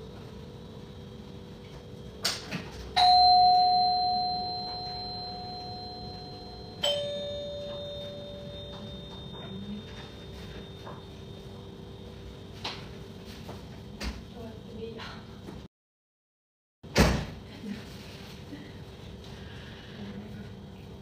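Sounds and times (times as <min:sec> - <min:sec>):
two-tone doorbell chime: 0:03.0 - 0:11.0.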